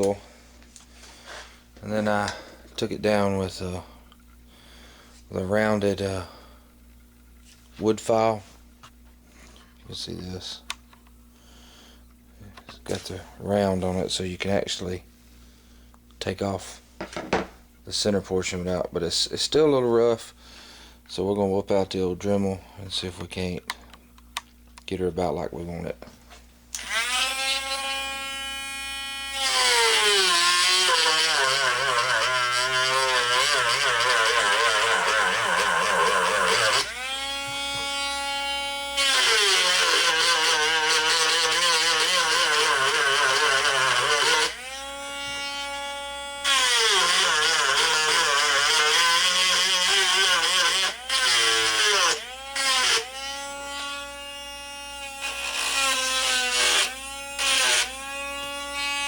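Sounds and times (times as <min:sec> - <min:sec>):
rotary tool grinding wood: 0:26.8 - 0:59.0.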